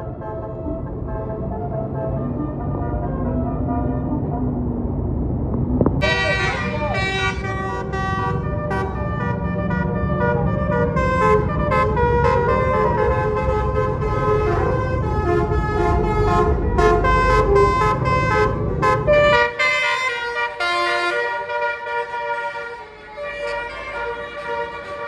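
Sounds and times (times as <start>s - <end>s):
low rumble of bus: 0.0s - 25.0s
multi-tone bus horn melody: 6.0s - 25.0s.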